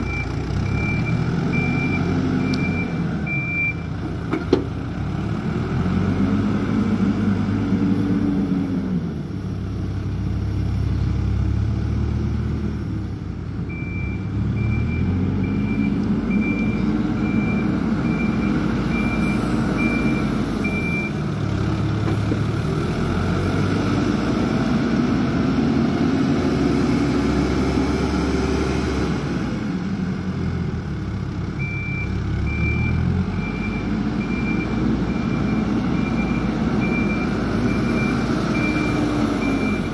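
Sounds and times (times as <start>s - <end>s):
reversing alarm beeping: 0.0s - 3.9s, 13.7s - 21.2s, 31.6s - 39.9s
heavy vehicle engine working: 0.0s - 39.9s.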